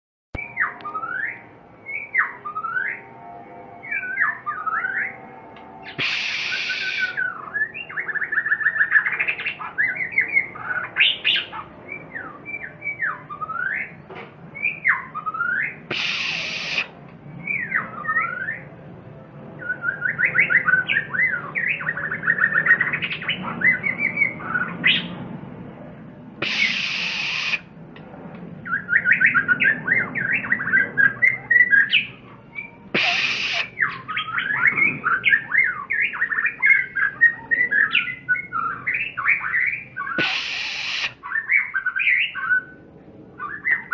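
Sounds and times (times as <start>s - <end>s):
songbird whistled phrases: 0.4s - 3.1s, 3.8s - 5.2s, 5.8s - 18.7s, 19.6s - 25.1s, 26.4s - 27.6s, 28.6s - 42.8s, 43.4s - 43.9s
harsh rasping bird notes: 3.8s - 13.3s, 14.6s - 18.4s, 26.4s - 27.7s, 28.7s - 42.6s
bird chattering trills: 5.8s - 12.7s, 15.8s - 16.9s, 26.4s - 27.6s, 29.2s - 42.5s.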